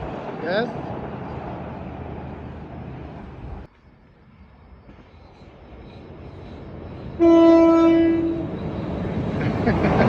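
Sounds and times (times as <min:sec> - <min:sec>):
train rumble: 0:00.0 - 0:10.0
train horn: 0:07.2 - 0:08.5.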